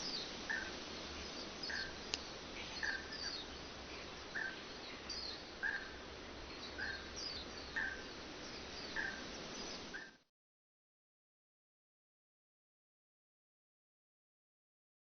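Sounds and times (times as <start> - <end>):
faint bird chirps: 0.0 - 10.2
steady background hiss: 0.0 - 10.3.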